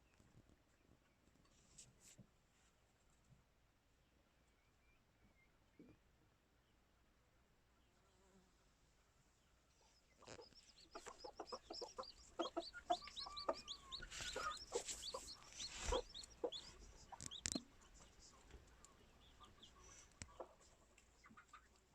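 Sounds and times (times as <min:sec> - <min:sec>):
chicks peeping: 0:09.8 - 0:21.9
hen clucking: 0:10.0 - 0:21.9.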